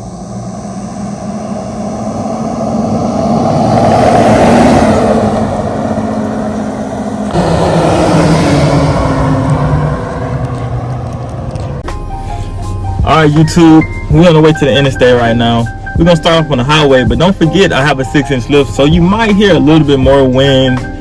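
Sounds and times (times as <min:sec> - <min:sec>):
vehicle tire noise driving past: 0:00.0 - 0:11.9.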